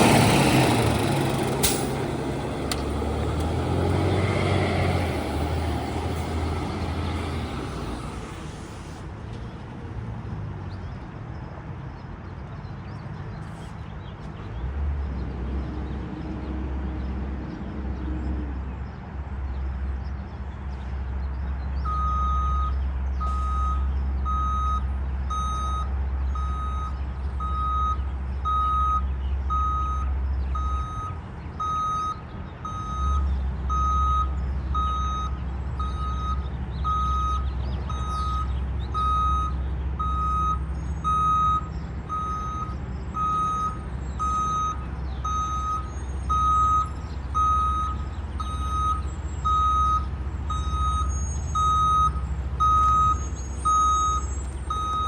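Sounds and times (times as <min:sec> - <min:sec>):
diesel engine rumble: 0:00.0 - 0:55.0
backup alarm beeping: 0:23.3 - 0:55.0.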